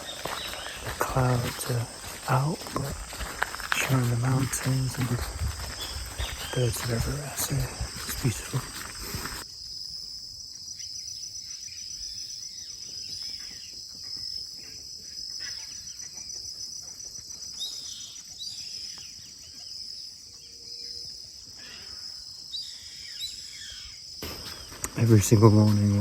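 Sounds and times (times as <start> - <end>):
birds chirping and calling: 0.0 - 9.4, 22.6 - 26.0
sharp falling bird calls: 0.0 - 9.4, 21.6 - 26.0
insect chorus: 0.0 - 26.0.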